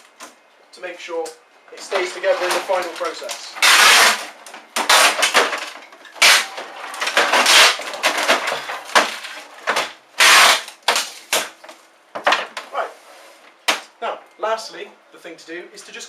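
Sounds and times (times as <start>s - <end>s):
tape ripping off roll: 2.0s - 11.7s.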